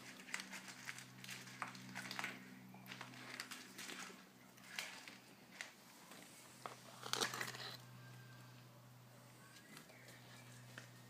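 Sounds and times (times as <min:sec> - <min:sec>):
rats eating wet clicks and crunches: 0:00.0 - 0:05.8
low hum: 0:06.2 - 0:11.0.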